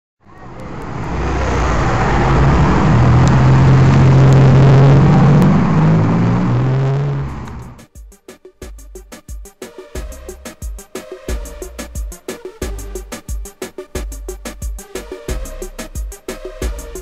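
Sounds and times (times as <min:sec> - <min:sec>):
car engine and loud exhaust passing: 0:00.2 - 0:07.9
music with a beat: 0:07.8 - 0:17.0.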